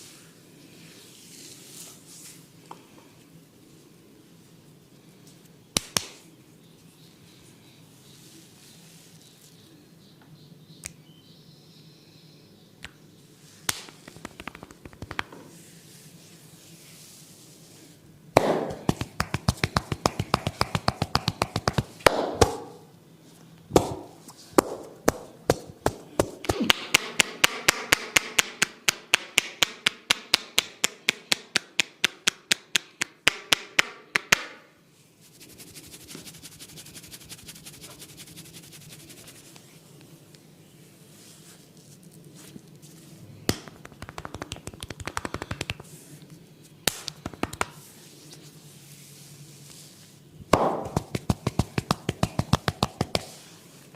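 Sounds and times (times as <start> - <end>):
massage tapping strikes: 13.7 - 15.3, 18.4 - 22.8, 23.7 - 34.6, 43.5 - 45.8, 50.5 - 53.3.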